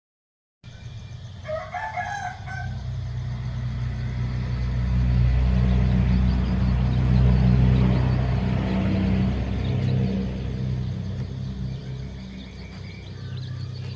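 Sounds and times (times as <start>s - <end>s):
rooster crowing: 1.3s - 3.1s
low steady rumble: 2.4s - 13.9s.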